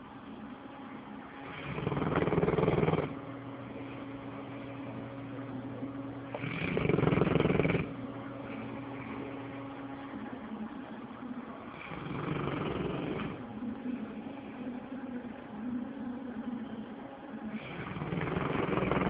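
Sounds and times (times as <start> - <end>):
dog snoring: 1.4 - 3.2, 6.3 - 9.5, 11.7 - 13.4, 17.5 - 19.0.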